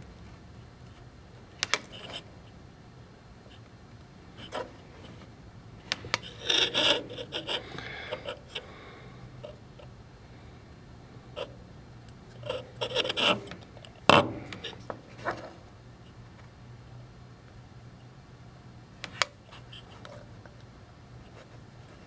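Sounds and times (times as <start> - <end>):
faint steady hum: 0.0 - 22.0
scraping and rubbing: 5.9 - 8.7, 12.3 - 15.6.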